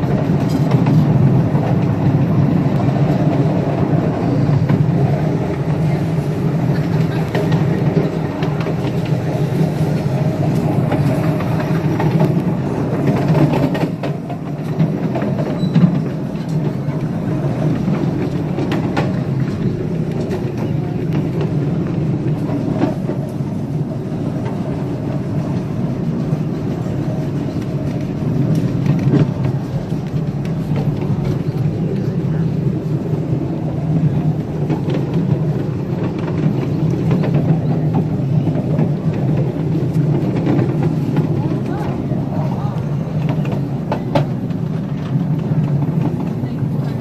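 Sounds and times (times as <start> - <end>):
train wheels rumbling on track: 0.0 - 47.0
wheels clicking over rail joints: 0.0 - 47.0.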